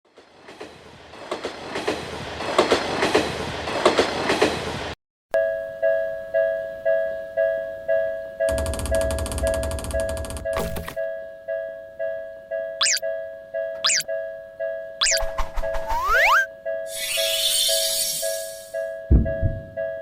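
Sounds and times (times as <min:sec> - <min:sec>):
train clickety-clack on rails: 0:00.1 - 0:05.0, 0:19.1 - 0:19.9
music: 0:05.4 - 0:08.5, 0:10.0 - 0:20.0
railroad crossing bell: 0:05.4 - 0:08.6, 0:11.0 - 0:15.0, 0:18.3 - 0:19.1.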